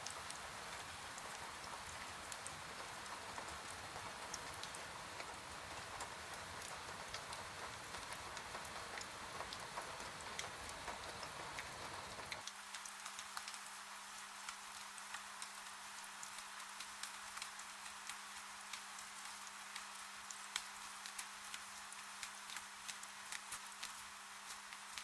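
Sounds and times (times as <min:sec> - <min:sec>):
faint steady hum: 0:00.0 - 0:12.4
rain drops ticking on window: 0:00.0 - 0:25.0.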